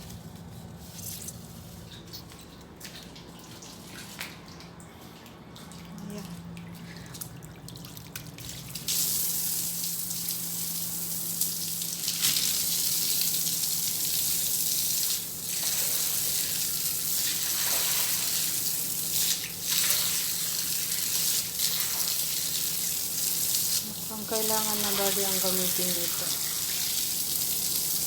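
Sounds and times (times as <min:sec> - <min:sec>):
water spraying from garden hose: 0:08.5 - 0:28.0.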